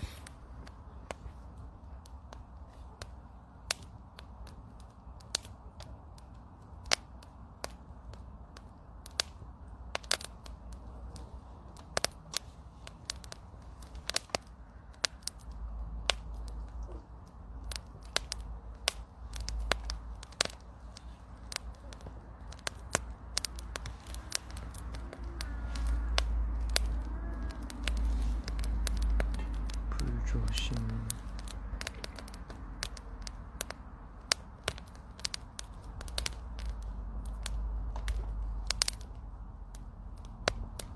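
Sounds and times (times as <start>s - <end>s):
campfire crackling: 0.0s - 40.9s
fire pops and snaps: 0.0s - 40.9s.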